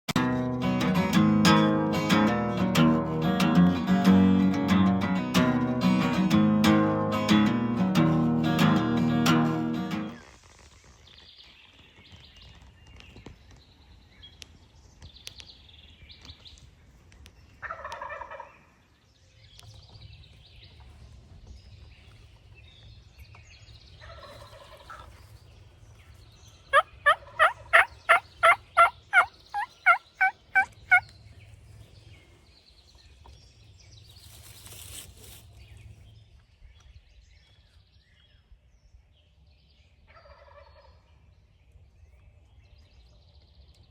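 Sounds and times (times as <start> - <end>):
turkey gobbling: 17.6 - 18.5, 26.7 - 31.0
faint small-bird chirps: 26.1 - 31.2
turkey yelps: 26.7 - 31.0.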